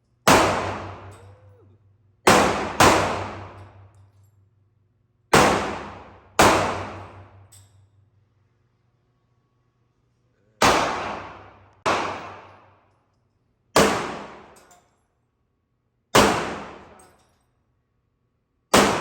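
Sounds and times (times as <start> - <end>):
pistol shots echoing: 0.3 - 1.3, 2.2 - 3.9, 5.3 - 7.4, 10.6 - 12.7, 13.8 - 14.6, 16.1 - 17.0, 18.7 - 19.0.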